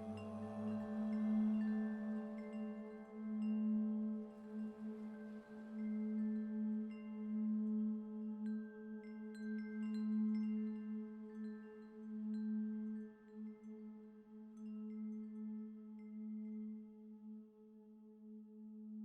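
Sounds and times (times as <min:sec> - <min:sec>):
low singing bowl drone: 0:00.0 - 0:08.8
wind chimes: 0:00.0 - 0:17.1.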